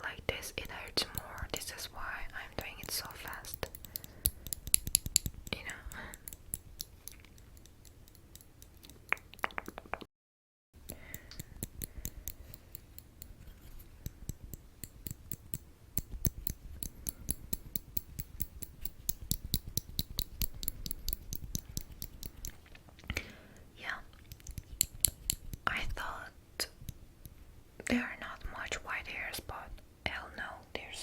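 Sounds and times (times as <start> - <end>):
metallic hand tool clicking: 2.8 - 9.1, 10.8 - 22.6, 24.3 - 25.6.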